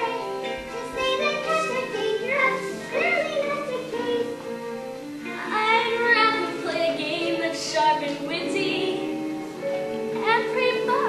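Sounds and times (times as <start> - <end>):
children singing: 0.0 - 4.4
musical accompaniment: 0.0 - 11.0.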